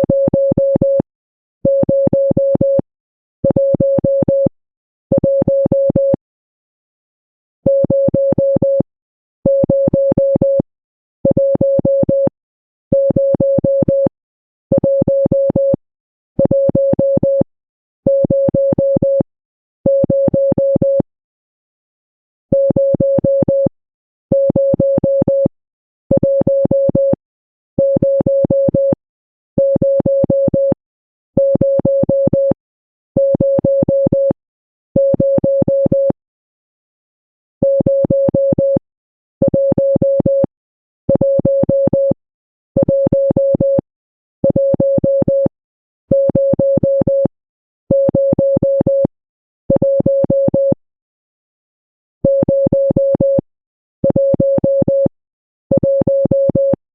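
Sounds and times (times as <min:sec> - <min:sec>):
morse code beeps: 0:27.8 - 0:29.0, 0:41.1 - 0:42.2, 0:42.8 - 0:43.8, 0:48.0 - 0:49.1, 0:54.0 - 0:55.1, 0:55.8 - 0:56.8.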